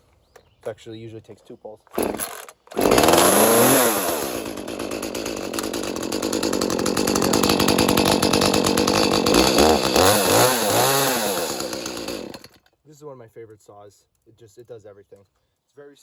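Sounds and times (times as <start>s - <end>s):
chainsaw starting and revving: 1.9s - 12.6s.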